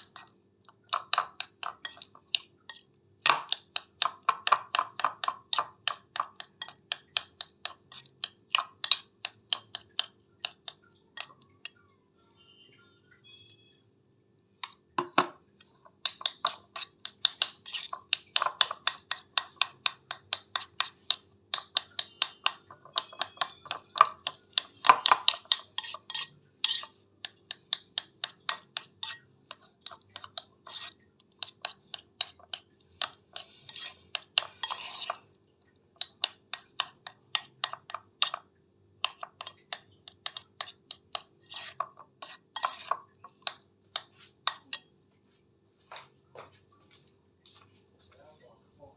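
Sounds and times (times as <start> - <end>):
utensil scraping against a dish: 1.0 - 11.8, 15.6 - 35.3, 39.0 - 44.9.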